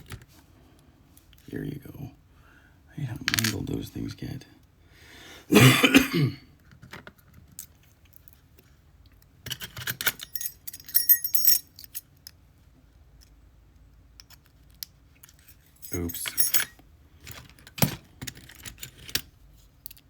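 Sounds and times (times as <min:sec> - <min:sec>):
metal lock parts clinking: 0:09.4 - 0:12.4, 0:14.2 - 0:20.0.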